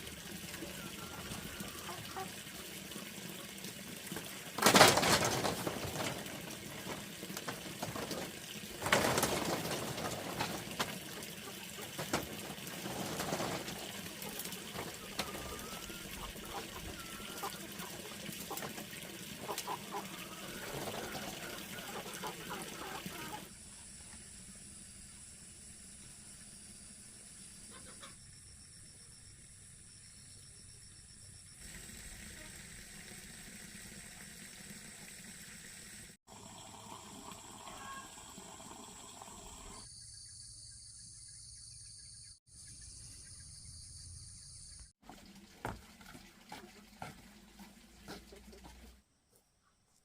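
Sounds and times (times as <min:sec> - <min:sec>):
water gushing: 0:00.0 - 0:23.5, 0:31.6 - 0:39.8, 0:45.0 - 0:49.0.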